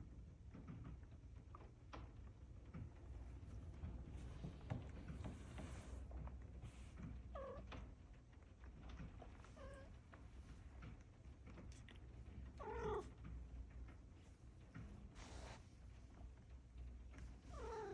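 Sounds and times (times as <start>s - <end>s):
cat meowing: 12.6s - 13.1s.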